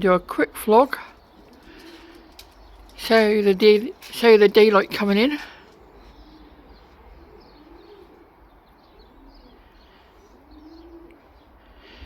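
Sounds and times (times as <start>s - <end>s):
small birds chirping faintly: 0.0s - 12.0s
pigeon cooing: 1.3s - 2.9s, 5.2s - 12.0s.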